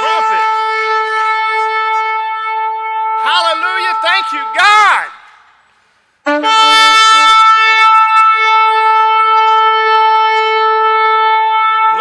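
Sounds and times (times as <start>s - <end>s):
long horn blast: 6.2s - 12.0s.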